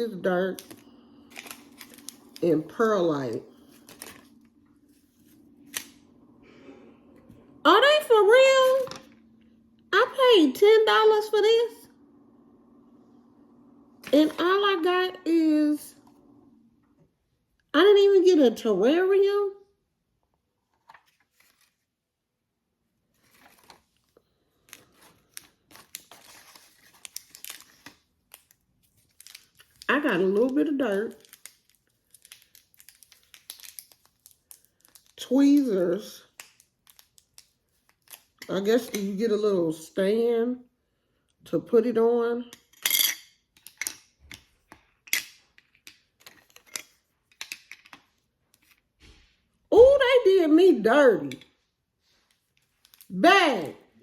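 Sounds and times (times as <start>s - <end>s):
plastic packaging crinkling: 0.5s - 6.0s, 23.2s - 38.4s.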